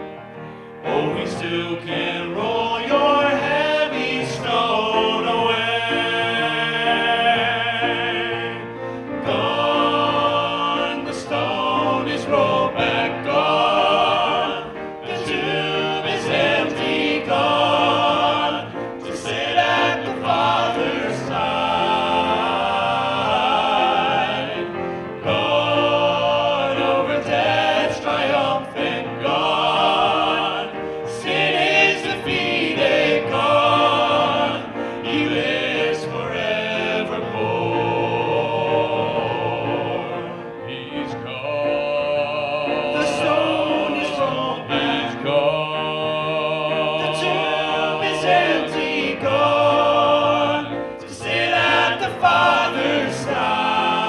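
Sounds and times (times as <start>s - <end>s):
vocal group singing gospel: 0.8s - 54.0s.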